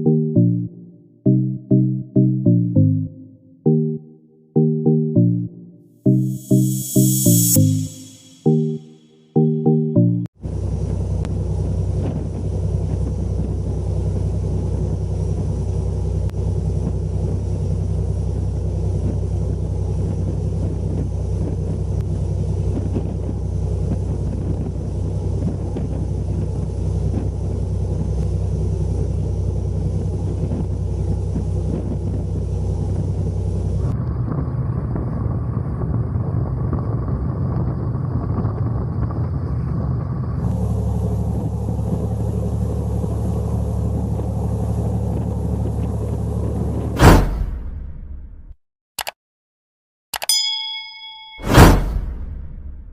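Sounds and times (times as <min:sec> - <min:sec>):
deep rumbling engine drone: 0:00.0 - 0:04.0, 0:04.6 - 0:08.8, 0:09.4 - 0:48.6
speedboat engines running: 0:10.4 - 0:33.9, 0:40.4 - 0:47.0
wind buffeting microphone: 0:30.0 - 0:40.5.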